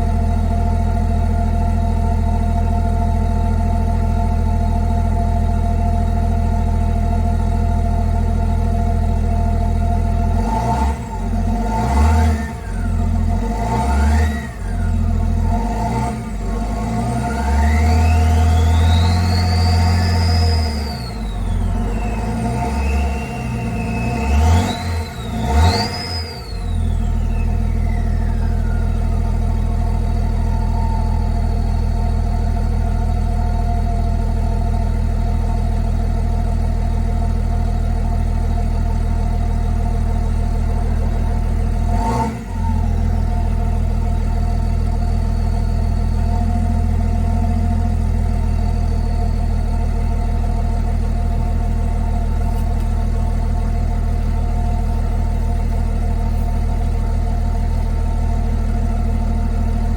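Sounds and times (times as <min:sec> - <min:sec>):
diesel engine idling: 0:00.0 - 0:59.9
faint turbo whistle: 0:17.3 - 0:59.9
whistle sliding down in pitch: 0:17.9 - 0:31.7.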